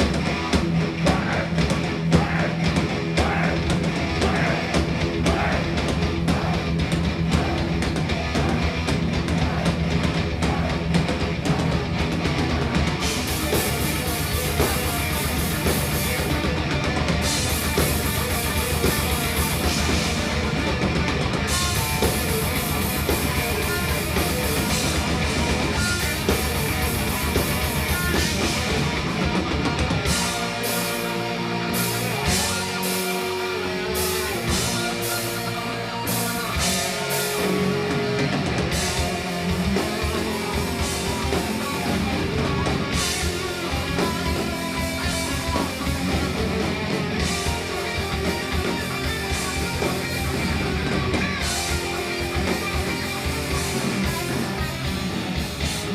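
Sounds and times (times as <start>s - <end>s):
thrash metal band playing: 0.0s - 55.9s
guitar riff with held notes: 13.0s - 55.9s.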